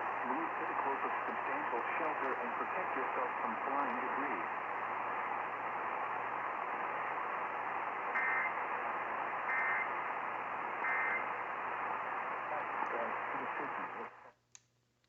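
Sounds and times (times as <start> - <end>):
radio hiss: 0.0 - 14.3
alert data tone bursts: 8.2 - 8.5, 9.5 - 9.9, 10.8 - 11.2.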